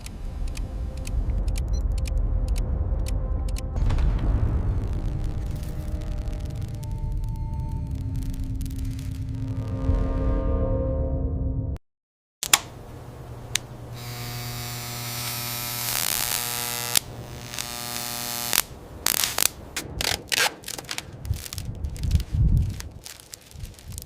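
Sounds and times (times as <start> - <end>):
mechanical clicks and clanks: 12.4 - 12.8
small electric motor whirring: 13.9 - 19.5.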